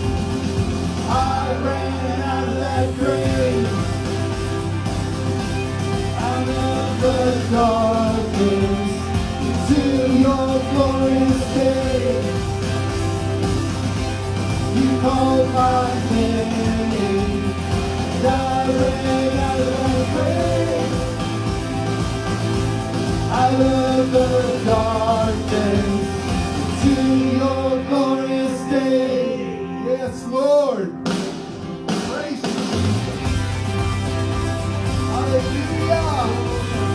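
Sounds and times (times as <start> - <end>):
worship band music: 0.0 - 36.9
person singing: 1.0 - 4.9, 6.0 - 21.9, 23.0 - 31.0.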